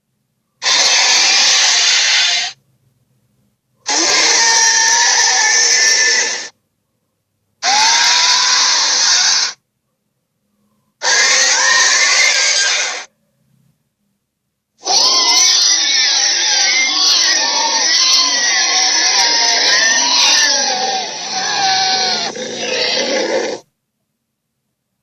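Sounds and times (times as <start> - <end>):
giant ape roars: 0.6 - 2.6, 3.9 - 6.5, 7.6 - 9.6, 11.0 - 13.1, 14.8 - 23.7.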